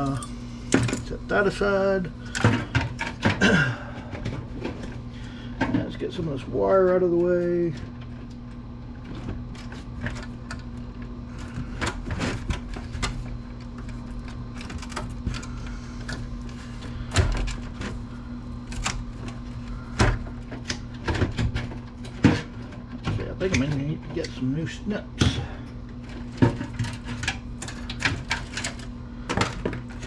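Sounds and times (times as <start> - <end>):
steady low hum: 0.0 - 30.0
clicks and snaps of wiring: 26.1 - 30.0.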